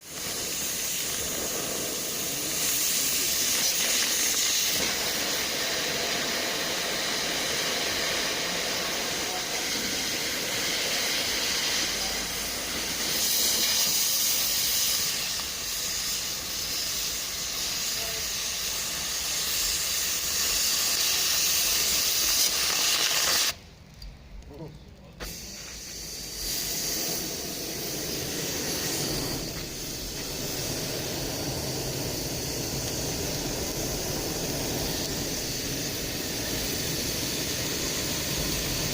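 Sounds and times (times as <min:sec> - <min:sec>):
campfire coals hissing: 0:00.0 - 0:38.9.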